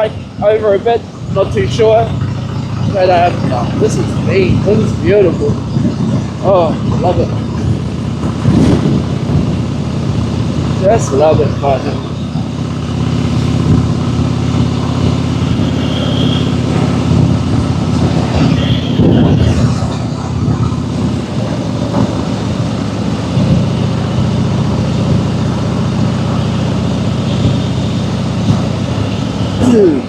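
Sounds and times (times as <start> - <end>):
motorcycle engine cruising: 0.0 - 30.0.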